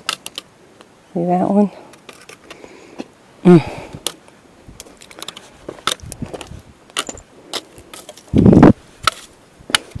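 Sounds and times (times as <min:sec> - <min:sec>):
camera handling clicks and rustles: 0:00.0 - 0:00.5, 0:04.0 - 0:08.3.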